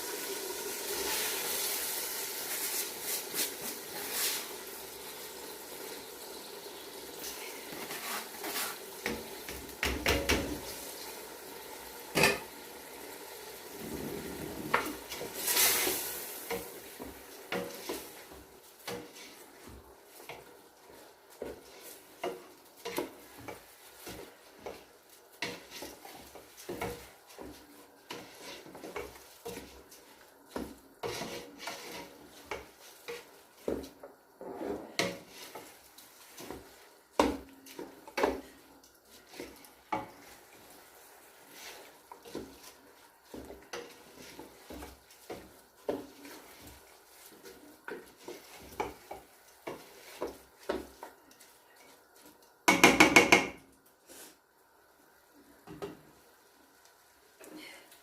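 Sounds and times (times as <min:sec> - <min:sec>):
spoon stirring in a pot: 0:07.2 - 0:10.9, 0:13.7 - 0:53.7.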